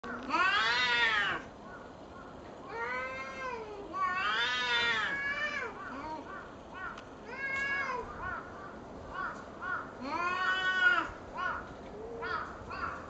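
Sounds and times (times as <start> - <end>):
cats yowling: 0.0 - 1.5, 2.6 - 13.0.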